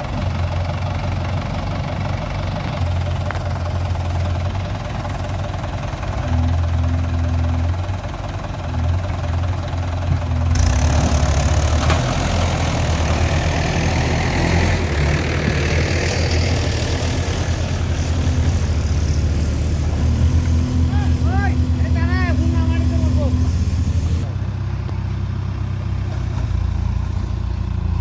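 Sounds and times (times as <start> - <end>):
diesel engine running: 0.0 - 28.0
broad hiss: 16.6 - 24.2.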